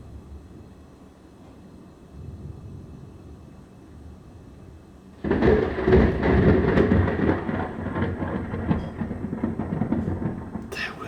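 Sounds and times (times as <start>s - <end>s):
thunderclap with rolling rumble: 5.2s - 10.7s.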